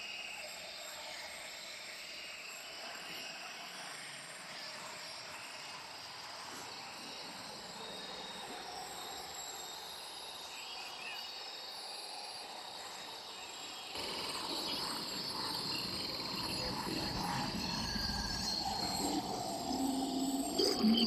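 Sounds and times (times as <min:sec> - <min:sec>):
insects chirping: 0:07.8 - 0:21.0.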